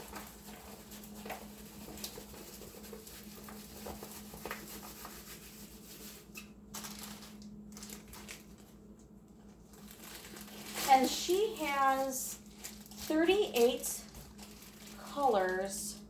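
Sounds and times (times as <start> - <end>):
canvas rustling while rolled: 9.6 - 15.7.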